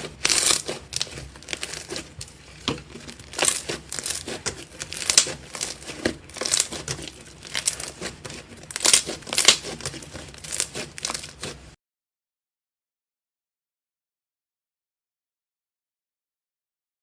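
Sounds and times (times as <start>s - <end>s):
slime crackling and popping: 0.0s - 11.7s.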